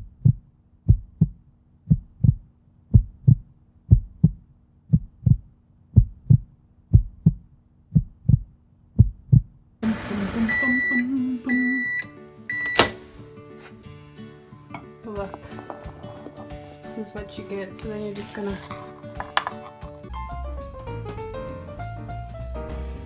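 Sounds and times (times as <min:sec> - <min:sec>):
microwave oven beeps: 0:10.4 - 0:13.2.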